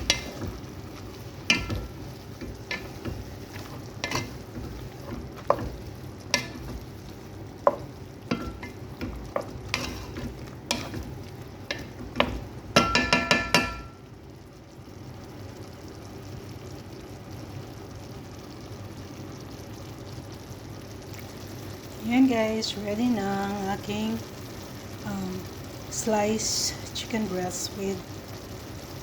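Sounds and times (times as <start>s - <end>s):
food sizzling: 0.0s - 29.0s
utensil scraping metal pan: 1.5s - 6.8s, 7.7s - 11.1s
ringing taps on pan: 11.8s - 14.0s.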